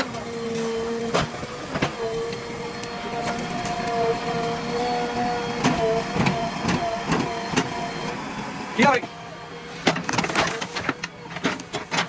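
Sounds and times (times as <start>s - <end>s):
backhoe engine under load: 0.0s - 12.0s
hydraulic whine: 0.0s - 12.0s.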